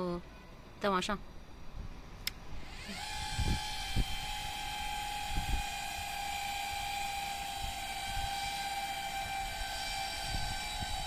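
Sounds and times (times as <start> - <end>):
remote-controlled lawn mower whine: 2.6 - 11.0.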